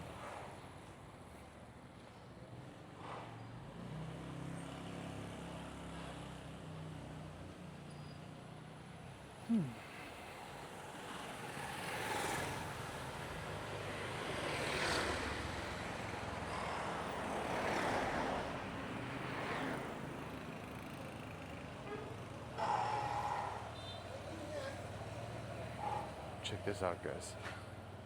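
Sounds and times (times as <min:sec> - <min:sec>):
vehicles passing: 0:09.5 - 0:28.0.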